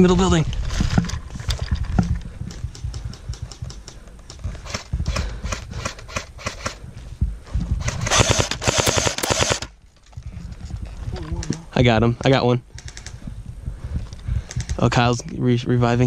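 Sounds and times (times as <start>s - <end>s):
airsoft gun clicks: 1.9s - 6.8s, 12.7s - 13.2s, 14.4s - 14.8s
rapid airsoft rifle burst: 4.5s - 6.8s, 7.8s - 9.7s.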